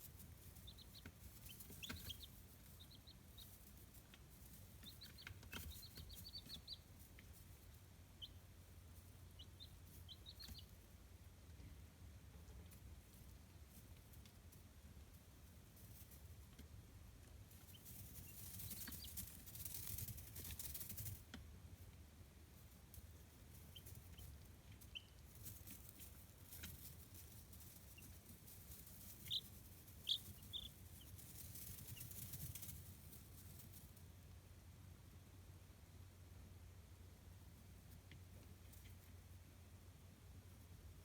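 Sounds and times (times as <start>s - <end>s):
chicks peeping: 0.0s - 11.6s, 15.7s - 34.0s
soft rustling: 17.3s - 34.1s.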